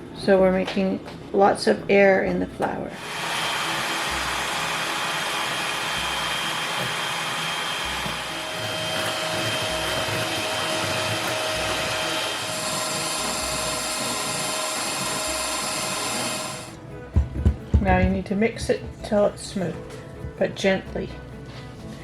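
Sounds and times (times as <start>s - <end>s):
electric kitchen mixer motor: 3.0s - 16.8s.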